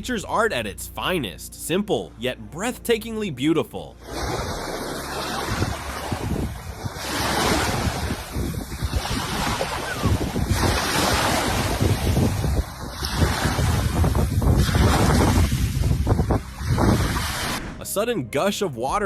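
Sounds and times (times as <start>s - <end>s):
wind buffeting microphone: 4.0s - 17.7s
sea surf washing ashore: 4.0s - 17.8s.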